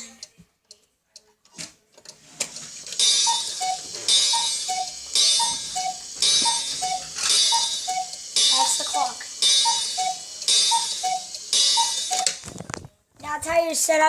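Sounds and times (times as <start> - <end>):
cuckoo clock calling: 2.1 - 12.5.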